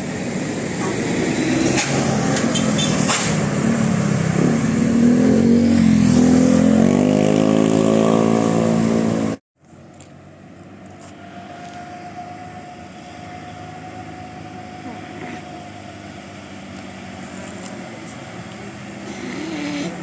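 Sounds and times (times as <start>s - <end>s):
large vehicle engine revving: 0.0s - 9.4s
quiet steady engine hum: 9.6s - 20.0s.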